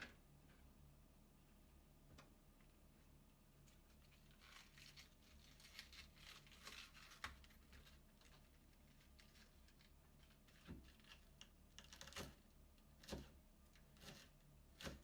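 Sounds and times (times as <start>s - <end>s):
cabbage crackling being cut: 13.9s - 15.0s.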